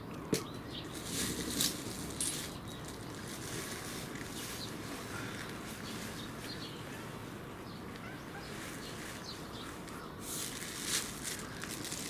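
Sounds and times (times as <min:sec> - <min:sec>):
outdoor background noise: 0:00.0 - 0:12.0
faint bird calls: 0:04.5 - 0:10.3.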